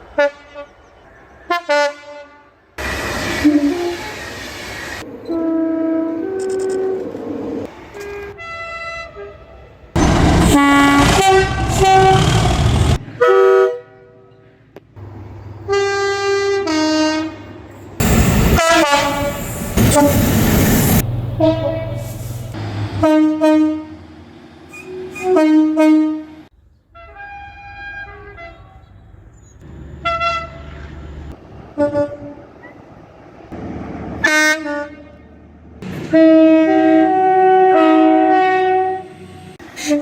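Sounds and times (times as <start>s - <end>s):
train passing close by: 10.0s - 13.2s, 18.0s - 25.8s
train air horn blasts: 10.0s - 13.8s, 18.0s - 24.1s, 36.1s - 40.0s.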